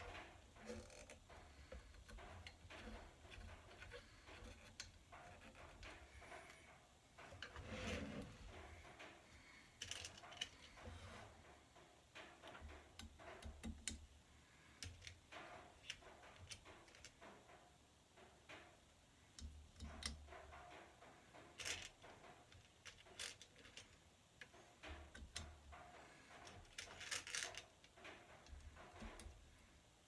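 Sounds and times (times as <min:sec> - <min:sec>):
faint small clicks and taps: 0:09.8 - 0:14.1.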